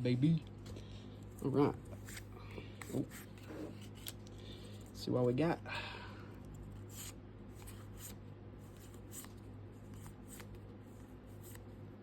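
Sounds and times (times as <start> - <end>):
cards flicking and rubbing: 1.3 - 4.4, 6.5 - 11.8.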